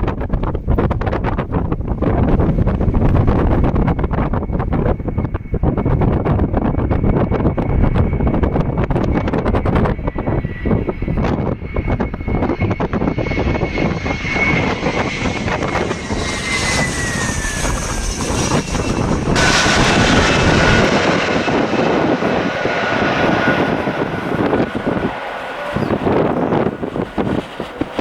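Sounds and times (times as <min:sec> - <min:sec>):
wind buffeting microphone: 0:00.0 - 0:28.0
airliner engines whining: 0:00.4 - 0:28.0.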